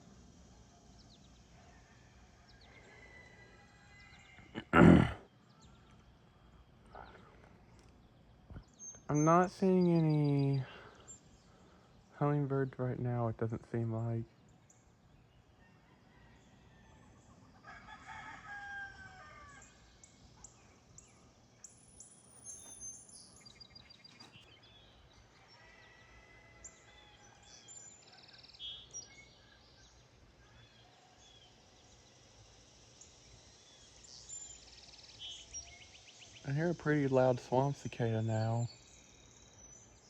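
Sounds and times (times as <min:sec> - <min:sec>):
faint rooster crowing: 0:00.6 - 0:06.2, 0:15.3 - 0:21.0, 0:25.1 - 0:32.0
faint bird chirps: 0:19.4 - 0:25.8.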